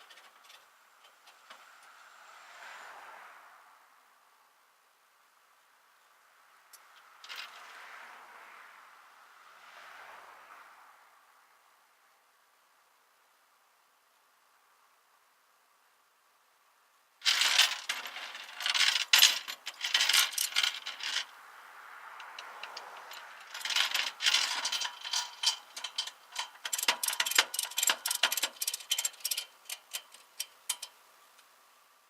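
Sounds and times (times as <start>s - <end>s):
metallic jingling and rattling: 17.2s - 21.3s, 22.4s - 30.9s
sharp metal clicks: 17.2s - 21.3s, 22.2s - 31.0s.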